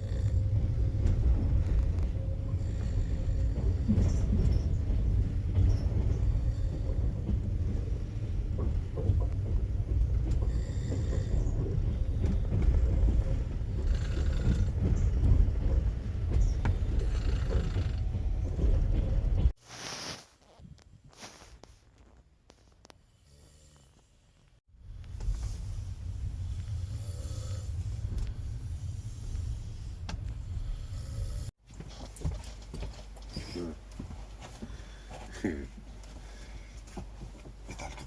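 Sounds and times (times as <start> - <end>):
train carriage rumble: 0.0 - 20.2, 24.5 - 38.0.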